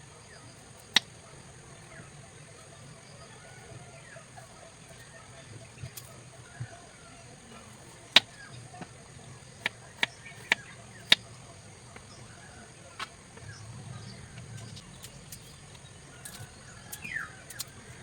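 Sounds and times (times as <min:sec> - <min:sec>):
faint low murmur: 0:00.0 - 0:18.0
sharp clicks: 0:09.6 - 0:11.3.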